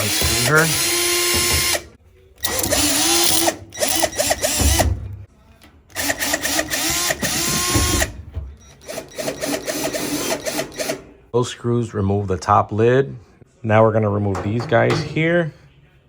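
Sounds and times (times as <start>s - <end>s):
cordless drill motor spinning: 0.0s - 4.8s, 5.9s - 8.0s, 8.8s - 11.0s.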